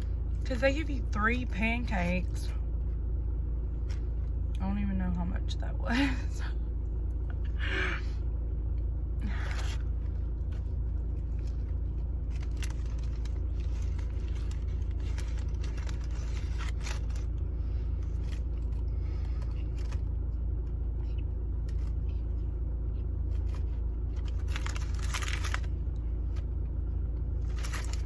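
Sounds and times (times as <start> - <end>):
car engine hum inside cabin: 0.0 - 28.0
packaging rustling: 9.6 - 17.4, 23.3 - 25.8.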